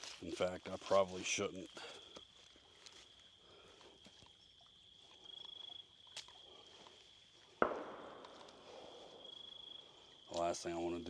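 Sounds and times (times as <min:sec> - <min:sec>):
insects trilling: 0:00.0 - 0:11.0.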